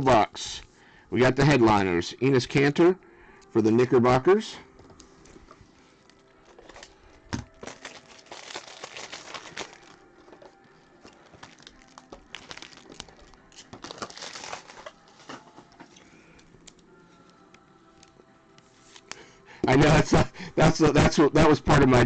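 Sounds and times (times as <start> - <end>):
packaging crinkling and tearing: 6.4 - 10.4, 11.0 - 15.5.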